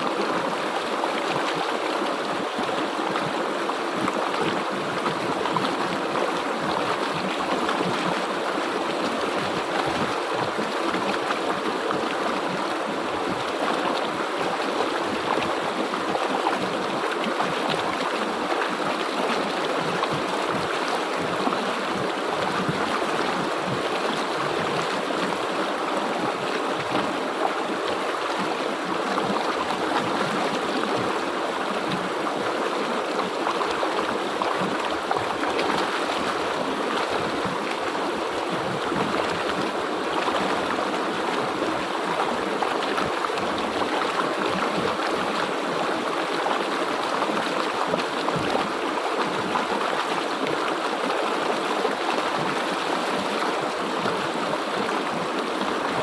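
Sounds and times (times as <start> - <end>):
river water flowing over rocks: 0.0 - 56.0.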